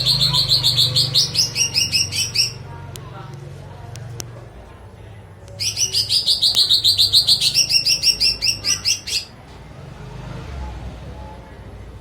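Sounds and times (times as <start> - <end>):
songbird chirping: 0.0 - 2.7, 5.5 - 9.4.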